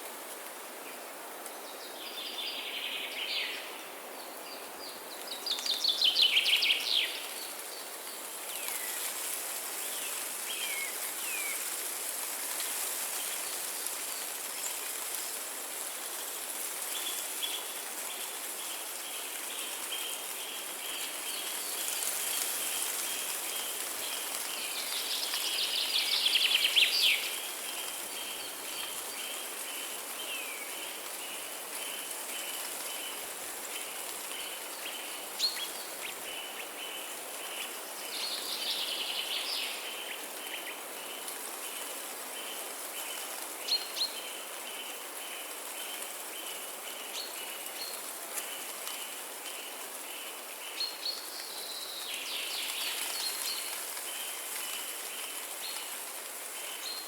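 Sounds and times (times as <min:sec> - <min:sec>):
songbirds singing: 0:01.6 - 0:11.7
hiss of running water: 0:03.2 - 0:57.0.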